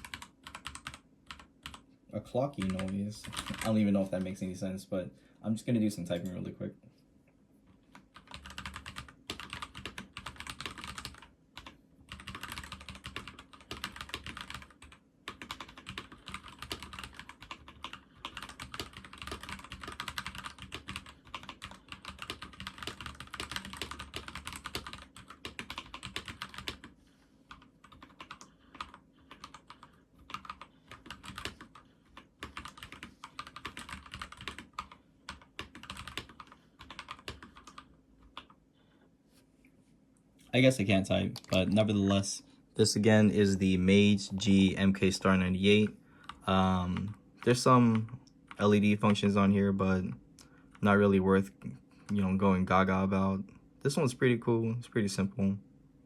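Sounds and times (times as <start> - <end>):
fast typing on mechanical keyboard: 0.0 - 1.8, 2.6 - 4.3, 7.9 - 26.9, 27.5 - 38.6.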